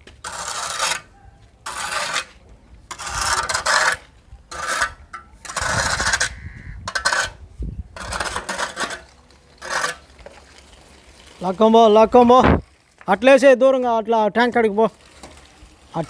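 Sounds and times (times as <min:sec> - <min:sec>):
pipe scraping over ground: 0:00.0 - 0:13.2, 0:13.8 - 0:16.0.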